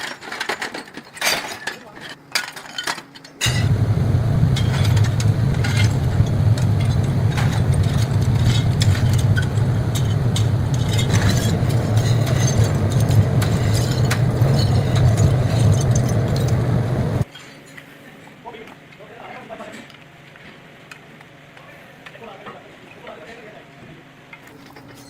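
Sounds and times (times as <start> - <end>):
clicks and crackles: 3.4 - 17.3
low machine drone: 3.4 - 17.3.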